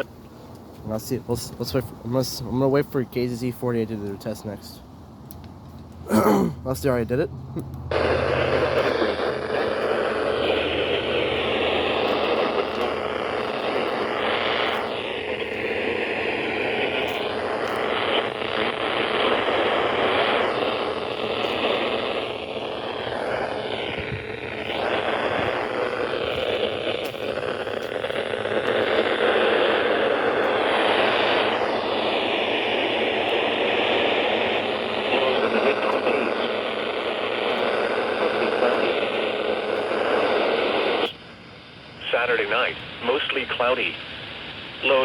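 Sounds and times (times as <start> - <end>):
radio static hiss: 0.0 - 4.9, 7.9 - 45.0.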